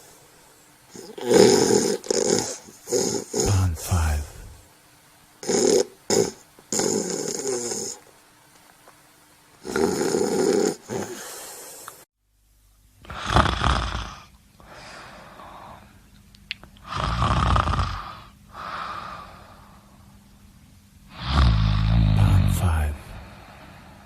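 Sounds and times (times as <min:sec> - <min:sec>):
loud snoring: 0:00.9 - 0:04.6, 0:05.4 - 0:08.0, 0:09.6 - 0:11.9, 0:13.0 - 0:14.3, 0:16.8 - 0:18.3, 0:21.1 - 0:23.4.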